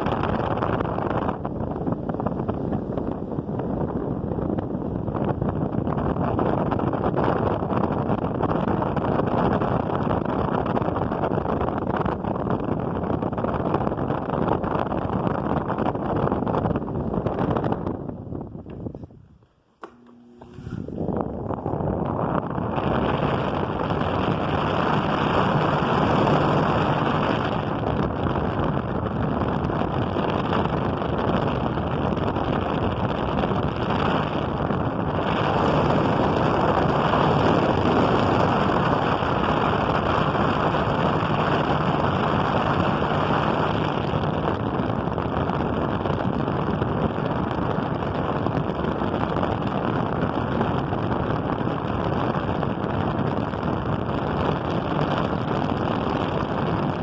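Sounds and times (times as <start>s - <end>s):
electric fan air rushing: 0.0s - 57.0s
faint low motor hum: 18.6s - 26.7s.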